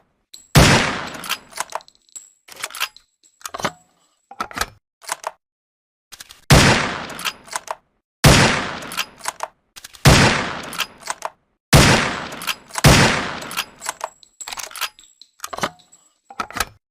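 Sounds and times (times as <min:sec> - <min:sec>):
rifle shots: 0:00.6 - 0:01.4, 0:06.5 - 0:07.3, 0:08.2 - 0:09.2, 0:10.1 - 0:10.8, 0:11.8 - 0:13.8
short mechanical clicks: 0:05.0 - 0:05.4.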